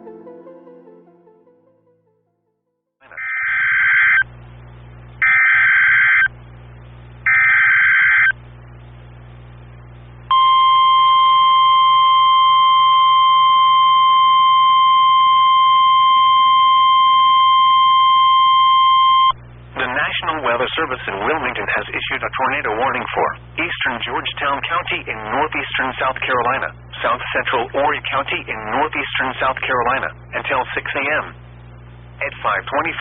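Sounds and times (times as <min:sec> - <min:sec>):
screeching digital data tones: 0:03.1 - 0:04.3, 0:05.2 - 0:06.3, 0:07.3 - 0:08.4
single-pitch warning alarm tone: 0:03.2 - 0:04.3, 0:05.2 - 0:06.3, 0:07.2 - 0:08.3, 0:10.3 - 0:19.4.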